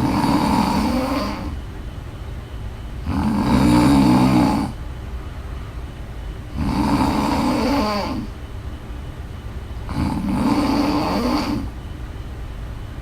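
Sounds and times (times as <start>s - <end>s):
long loud snores: 0.0s - 1.6s, 3.0s - 4.8s, 6.5s - 8.4s, 9.9s - 11.8s.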